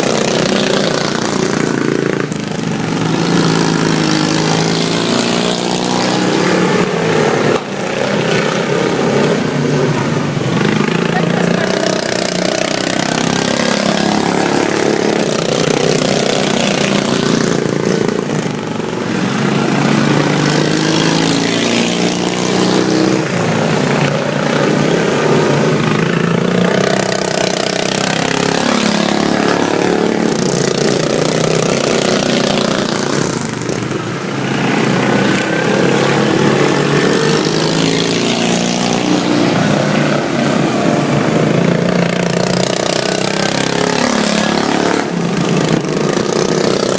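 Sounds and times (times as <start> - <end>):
racing lawn mower engines: 0.0 - 46.9.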